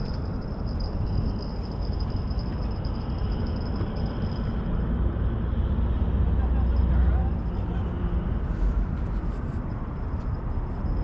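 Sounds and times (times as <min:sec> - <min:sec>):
faint high whine: 0:00.0 - 0:05.6.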